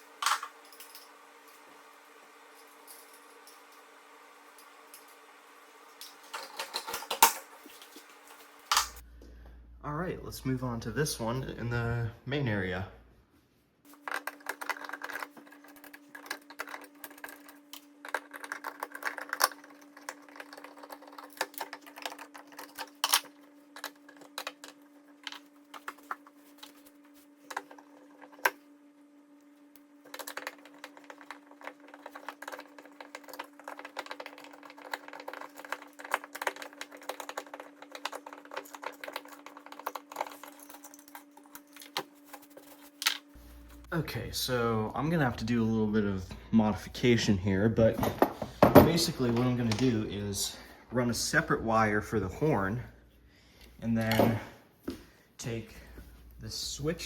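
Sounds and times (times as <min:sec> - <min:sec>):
faint steady hum: 0:00.0 - 0:57.0
small hard parts clattering: 0:13.9 - 0:26.8, 0:47.9 - 0:50.0.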